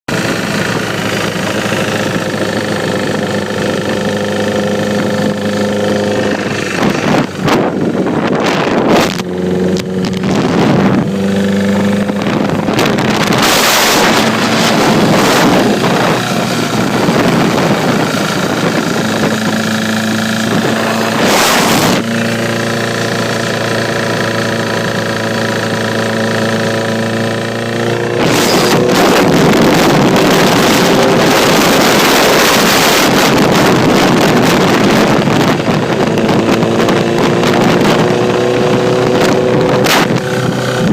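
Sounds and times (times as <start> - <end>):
motorcycle engine running: 0.1 - 40.9
gusts of rushing noise: 0.6 - 25.0, 26.9 - 40.9.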